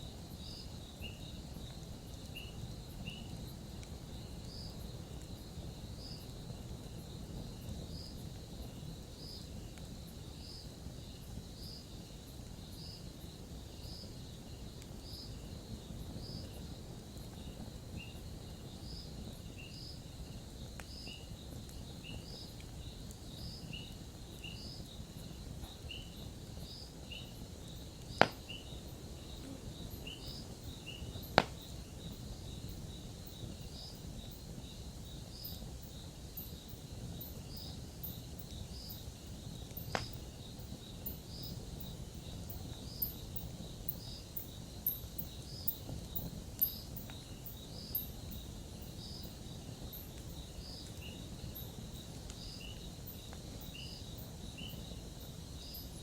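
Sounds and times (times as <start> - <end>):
campfire burning and crackling: 0.0 - 56.0
loud fire pops: 13.2 - 47.2.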